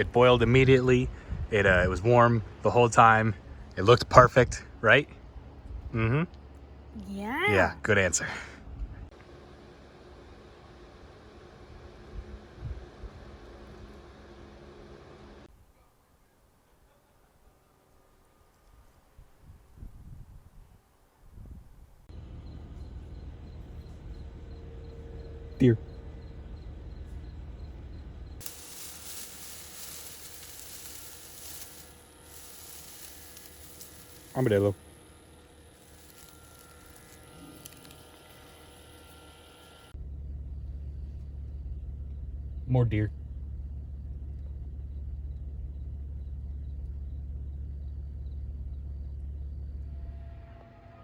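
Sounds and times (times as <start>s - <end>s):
low rumble: 21.4s - 50.9s
steady high-pitched hiss: 22.0s - 40.0s
car engine and road noise: 37.1s - 50.1s.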